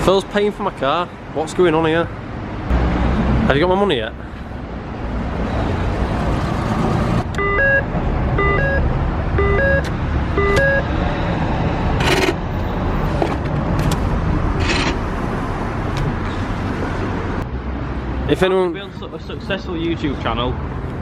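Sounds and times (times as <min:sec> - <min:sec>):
car cabin road and engine rumble: 0:11.9 - 0:17.4.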